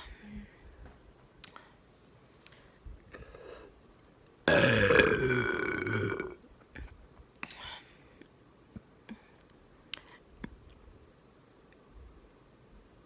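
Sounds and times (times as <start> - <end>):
long loud burp: 4.5 - 6.4.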